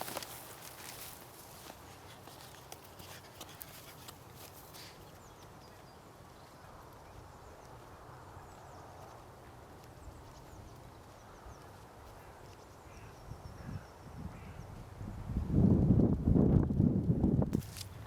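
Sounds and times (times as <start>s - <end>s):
footsteps on path: 0.0s - 12.7s, 17.6s - 18.0s
wind rumbling on microphone: 6.5s - 18.0s.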